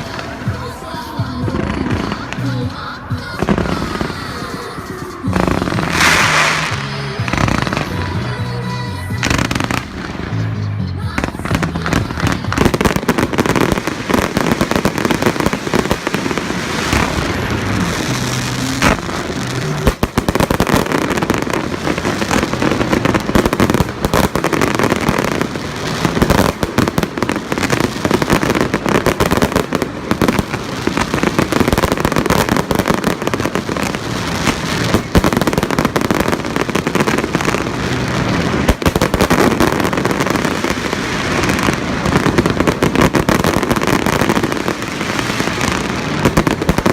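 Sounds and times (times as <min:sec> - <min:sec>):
fireworks bangs and crackling: 0:00.0 - 0:46.9.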